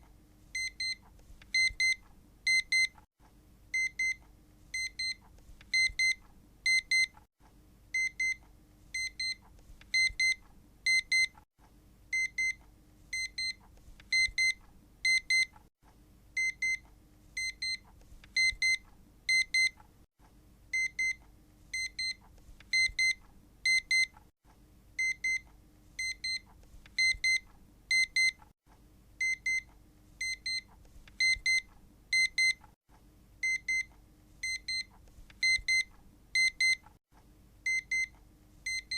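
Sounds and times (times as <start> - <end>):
electronic alarm beeping: 29.2 - 32.6, 33.4 - 36.8.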